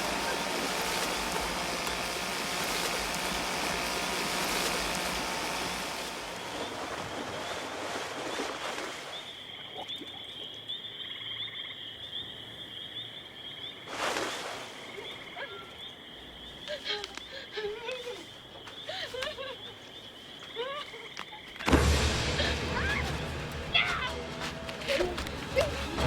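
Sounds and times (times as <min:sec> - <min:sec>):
crickets trilling: 0:06.4 - 0:21.7.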